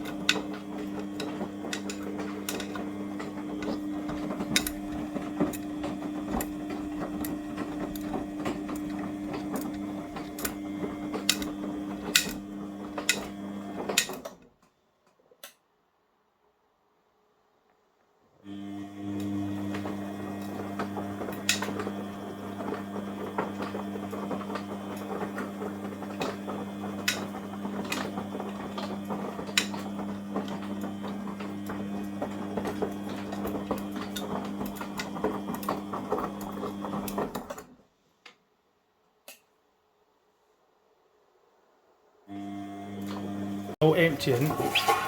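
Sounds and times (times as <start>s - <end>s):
washing machine motor hum: 0.0s - 14.4s, 18.4s - 37.7s, 42.3s - 45.0s
small clicks and rattles: 0.0s - 15.6s, 19.7s - 37.8s.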